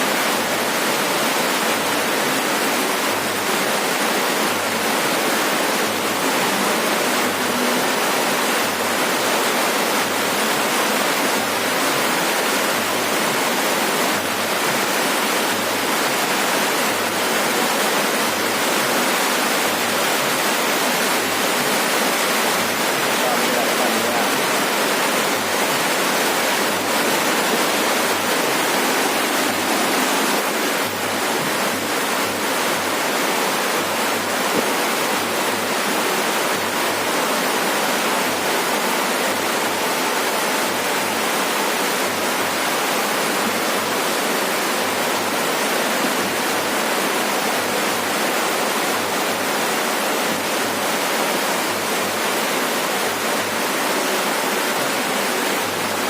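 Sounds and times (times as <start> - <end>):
heavy rain on a roof: 0.0 - 56.0.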